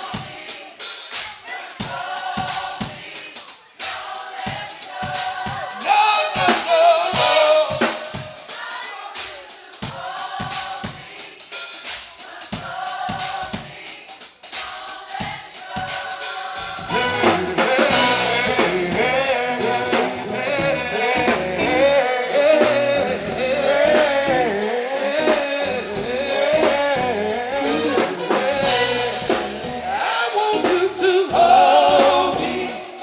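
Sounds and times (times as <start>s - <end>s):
drum kit beat: 0.0s - 33.0s
people singing: 0.0s - 33.0s
live band playing: 5.4s - 8.8s, 16.5s - 33.0s.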